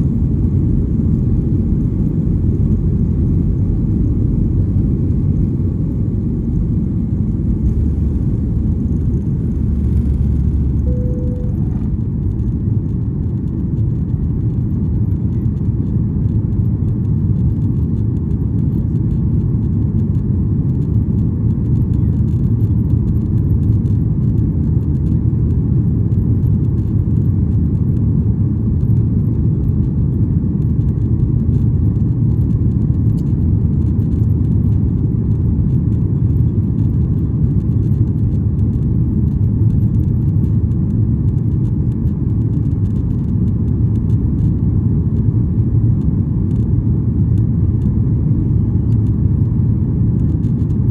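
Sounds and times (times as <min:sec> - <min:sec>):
jet engine cabin roar: 0:00.0 - 0:18.7, 0:31.2 - 0:50.9.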